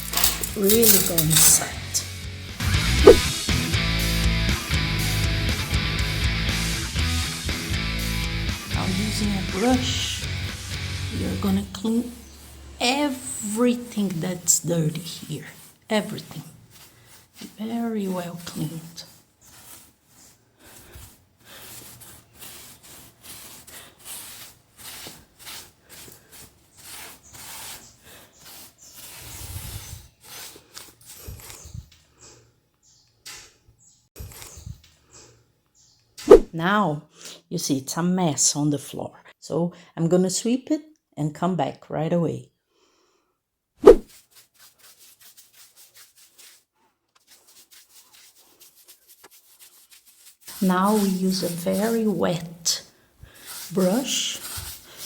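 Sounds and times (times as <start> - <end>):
broom sweeping floor: 2.8 - 3.5, 5.5 - 31.8, 43.8 - 55.0
brush scrubbing a wall: 5.2 - 31.8, 43.9 - 55.0.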